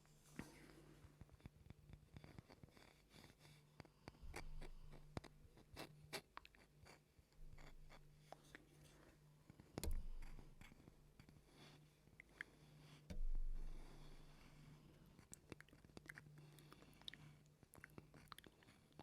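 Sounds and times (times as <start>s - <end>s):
dull thump: 13.1s - 13.8s.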